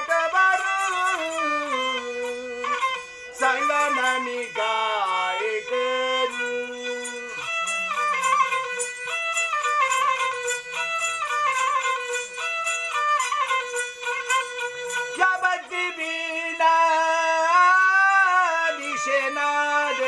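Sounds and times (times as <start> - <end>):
light percussion beat: 6.3 - 15.9.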